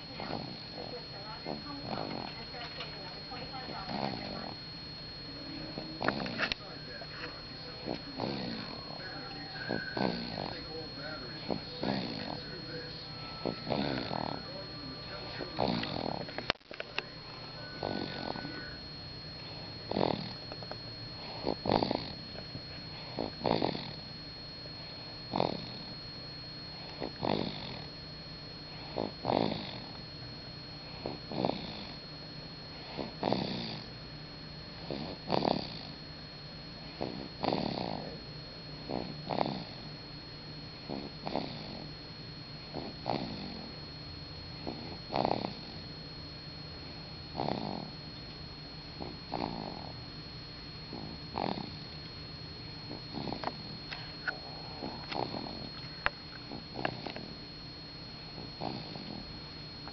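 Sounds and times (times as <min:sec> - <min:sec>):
baby snoring: 0:00.1 - 0:00.8, 0:01.4 - 0:02.5, 0:03.8 - 0:04.6, 0:05.6 - 0:06.5, 0:07.7 - 0:14.6, 0:15.2 - 0:16.4, 0:17.2 - 0:18.8, 0:19.4 - 0:20.4, 0:21.2 - 0:22.2, 0:22.9 - 0:24.0, 0:25.3 - 0:25.9, 0:26.8 - 0:27.9, 0:28.7 - 0:30.0, 0:30.9 - 0:32.0, 0:32.8 - 0:33.9, 0:34.8 - 0:36.0, 0:36.8 - 0:38.2, 0:38.9 - 0:39.8, 0:40.8 - 0:41.8, 0:42.7 - 0:43.7, 0:44.6 - 0:45.8, 0:47.4 - 0:47.9, 0:49.0 - 0:50.0, 0:50.9 - 0:51.8, 0:52.9 - 0:53.6, 0:54.2 - 0:55.8, 0:56.5 - 0:57.3, 0:58.4 - 0:59.3.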